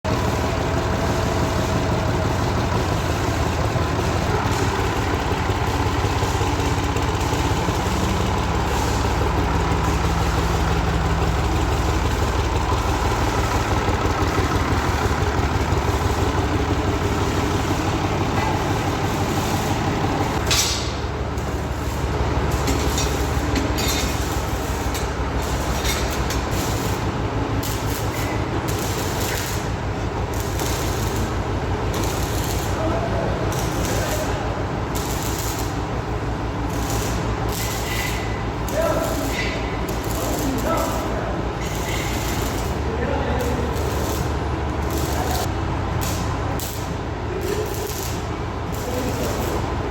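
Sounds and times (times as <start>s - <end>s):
sawmill machinery humming and rattling: 0.0s - 49.9s.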